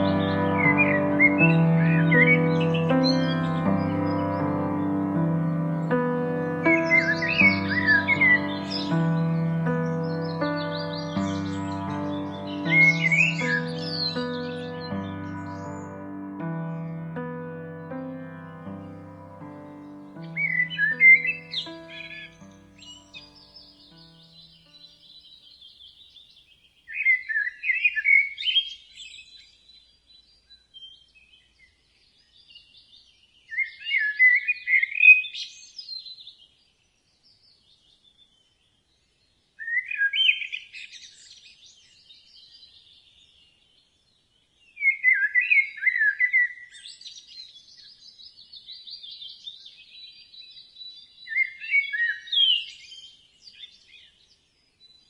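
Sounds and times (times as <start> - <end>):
bird singing warbling phrase: 0.0 - 23.4
high chirping: 0.0 - 24.3.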